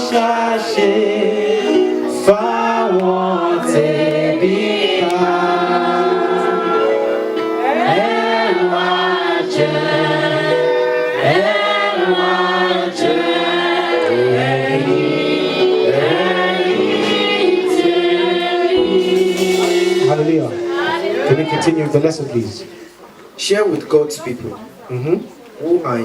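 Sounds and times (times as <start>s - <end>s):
group singing gospel chorus: 0.0s - 23.0s.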